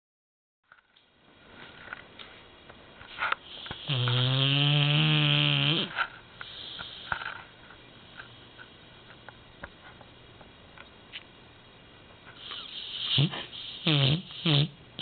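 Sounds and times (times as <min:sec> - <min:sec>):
dog snoring: 0:03.8 - 0:07.1, 0:12.4 - 0:15.0.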